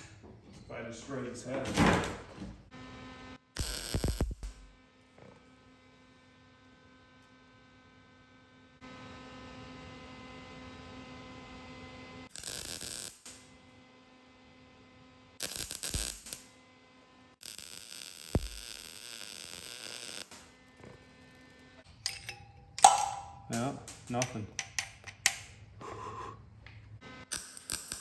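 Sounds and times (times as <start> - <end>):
welder arc crackling: 3.6 - 4.8, 12.3 - 13.5, 15.4 - 16.5, 17.4 - 20.5, 27.3 - 28.0.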